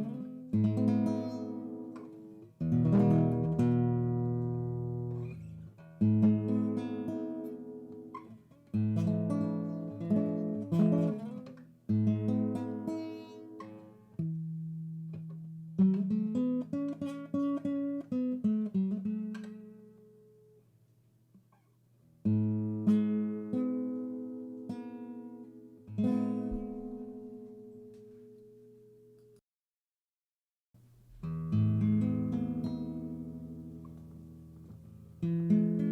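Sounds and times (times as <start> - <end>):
acoustic guitar strumming: 0.0 - 19.8, 22.3 - 28.0, 31.1 - 35.9.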